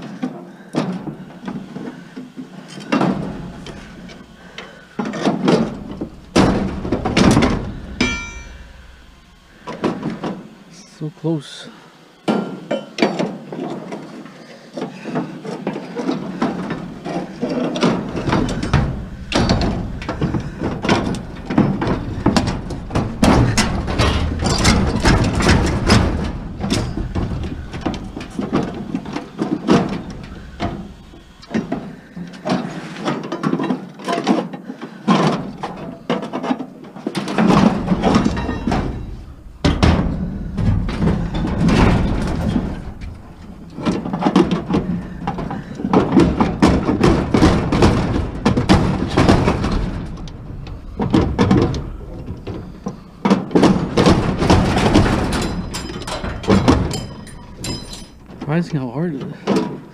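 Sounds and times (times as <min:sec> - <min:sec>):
metal banging and clanking: 0:02.8 - 0:11.4, 0:15.0 - 0:59.9
bar prying metal: 0:05.5 - 0:09.0.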